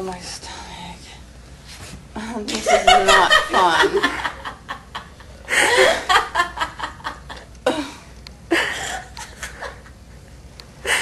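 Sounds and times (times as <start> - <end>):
young women laughing: 2.5 - 10.0.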